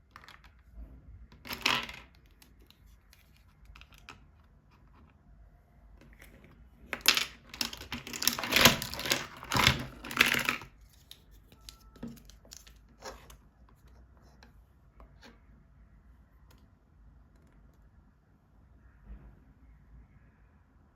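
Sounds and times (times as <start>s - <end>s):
plastic toys clicking and tapping: 6.9s - 10.7s
plastic packaging crinkling and tearing: 7.5s - 13.0s.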